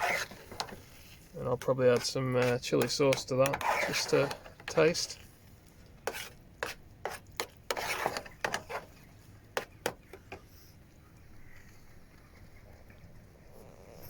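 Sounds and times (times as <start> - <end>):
utensil knocking and scraping cookware: 1.6 - 5.1, 6.1 - 8.9.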